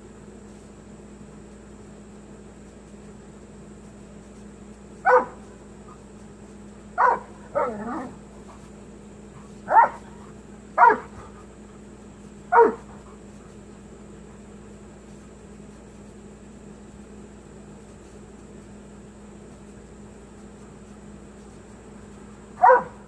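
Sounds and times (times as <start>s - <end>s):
dog barking: 5.0s - 5.5s, 7.0s - 8.2s, 9.7s - 11.4s, 12.5s - 13.2s, 22.6s - 23.0s.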